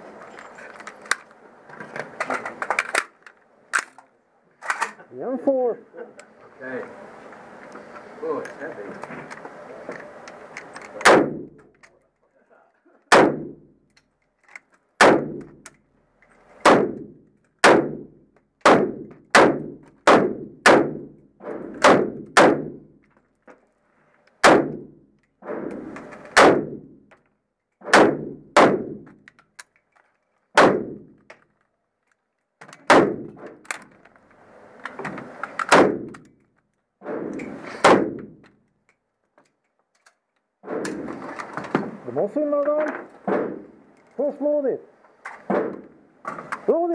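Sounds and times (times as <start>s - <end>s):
rifle single shots with echo: 11.0s - 11.6s, 13.1s - 13.7s, 15.0s - 15.6s, 16.6s - 22.9s, 24.4s - 25.0s, 26.3s - 27.0s, 27.8s - 29.1s, 30.6s - 31.1s, 32.8s - 33.4s, 35.7s - 36.2s, 37.1s - 38.4s.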